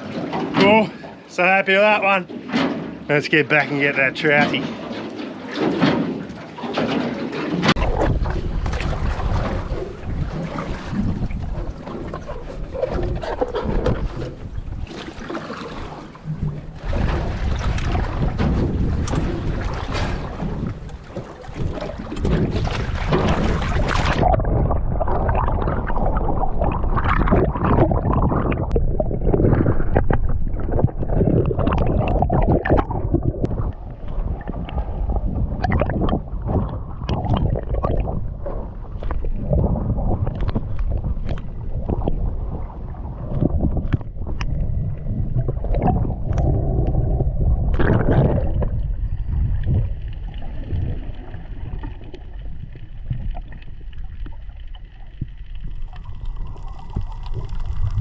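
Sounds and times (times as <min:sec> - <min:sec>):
muffled underwater rushing water: 0:00.0 - 0:58.0
sharp underwater clicks: 0:39.0 - 0:42.2, 0:43.3 - 0:47.0.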